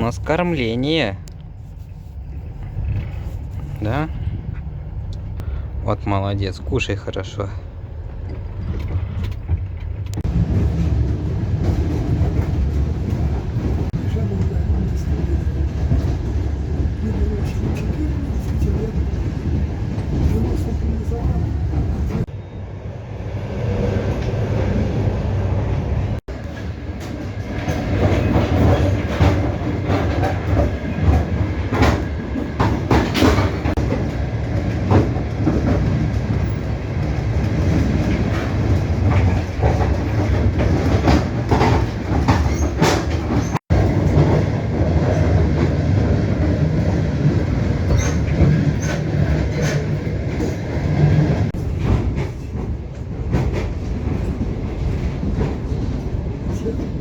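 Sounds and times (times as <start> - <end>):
train carriage rumble: 0.0 - 57.0
wheels clacking over rail joints: 26.2 - 57.0.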